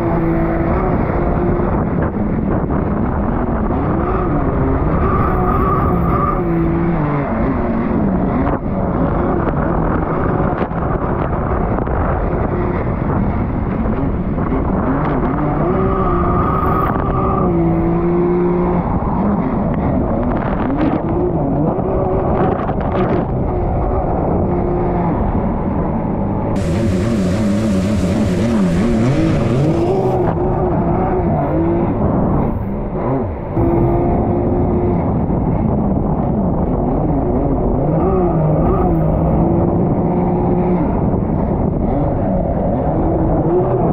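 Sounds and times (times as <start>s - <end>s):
jet ski engine revving: 26.6s - 32.4s.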